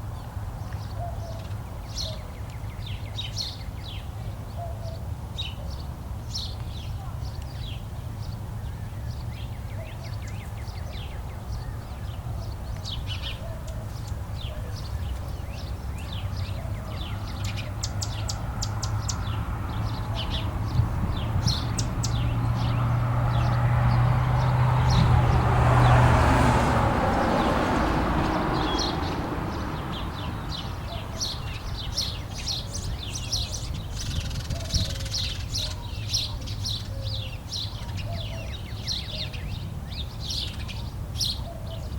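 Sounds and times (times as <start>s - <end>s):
small birds chirping: 0.1s - 26.0s, 27.1s - 41.9s
passing vehicle rumble: 6.4s - 41.9s.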